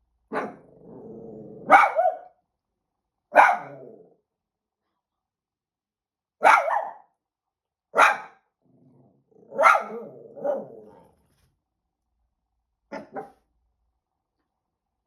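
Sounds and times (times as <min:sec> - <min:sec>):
small dog barking and growling: 0:00.3 - 0:02.4, 0:03.3 - 0:04.2, 0:06.4 - 0:07.0, 0:08.0 - 0:11.3, 0:12.9 - 0:13.4.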